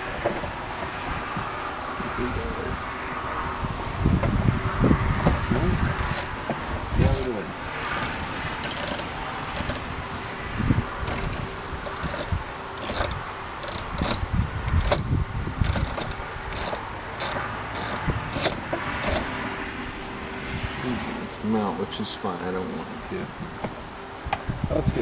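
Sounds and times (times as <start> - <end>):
hand ratchet clicking: 5.9 - 6.4, 7.0 - 9.8, 11.1 - 19.3.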